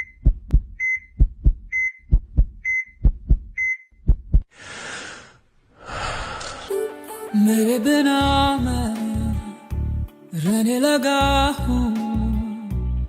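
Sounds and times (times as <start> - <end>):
heart monitor beep: 0.0 - 4.2
heartbeat thumps: 0.0 - 4.5.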